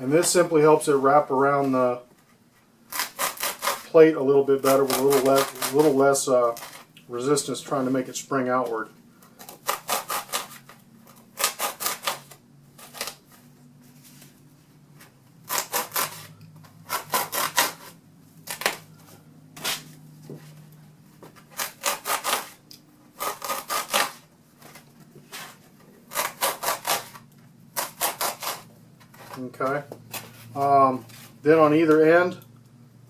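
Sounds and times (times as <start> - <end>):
blade sawing through foam: 15.5 - 16.3, 16.9 - 18.7, 21.5 - 22.6, 23.2 - 24.2, 26.1 - 27.2, 27.8 - 28.6.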